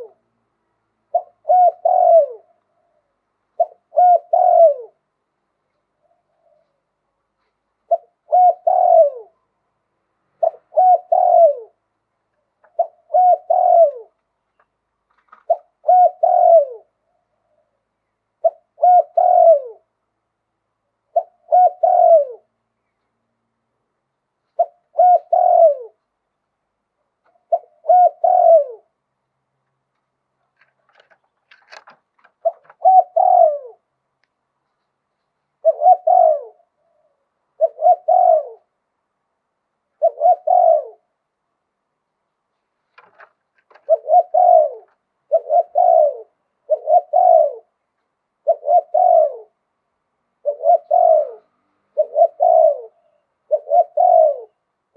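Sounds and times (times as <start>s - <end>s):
dove cooing: 0.0s - 0.3s, 1.0s - 5.1s, 5.9s - 9.6s, 10.4s - 20.0s, 21.0s - 22.6s, 24.5s - 26.1s, 27.2s - 29.0s, 30.4s - 33.9s, 35.5s - 38.8s, 39.9s - 41.2s, 43.0s - 47.8s, 48.4s - 49.7s, 50.4s - 54.7s
faint click: 34.2s - 35.0s.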